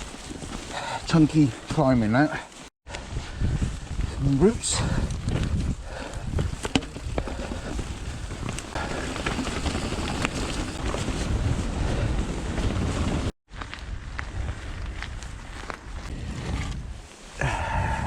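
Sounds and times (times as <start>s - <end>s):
wind buffeting microphone: 2.9s - 18.0s
mountain bike clicks and knocks: 6.2s - 11.3s.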